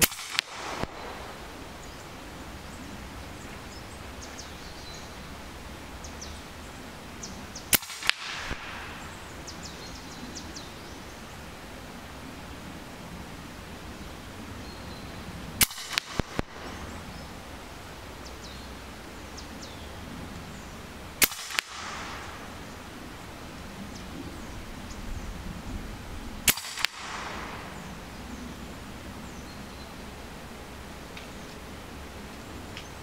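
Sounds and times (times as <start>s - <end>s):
air rifle shots: 0.0s - 2.3s, 7.7s - 9.4s, 15.6s - 16.9s, 21.2s - 22.9s, 26.4s - 28.0s
faint sharp clicks: 31.1s - 31.7s, 32.3s - 33.0s.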